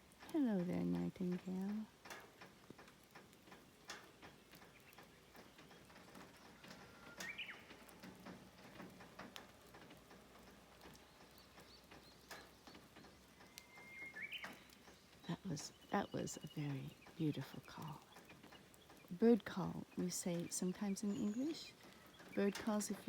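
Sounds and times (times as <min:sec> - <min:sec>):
bush warbler singing: 0:00.0 - 0:02.0, 0:03.3 - 0:08.8, 0:10.4 - 0:23.0.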